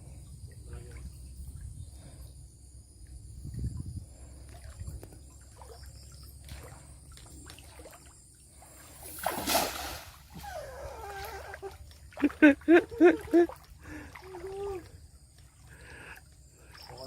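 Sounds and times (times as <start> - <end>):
river water lapping and splashing: 4.1 - 17.0
loud water splash: 9.0 - 10.4.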